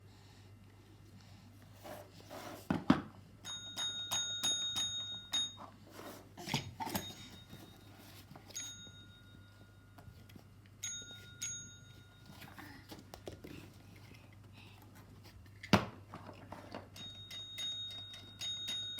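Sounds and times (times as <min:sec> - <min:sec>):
small metal bell ringing: 0:03.4 - 0:05.7, 0:06.9 - 0:10.2, 0:10.8 - 0:12.4, 0:17.0 - 0:18.9.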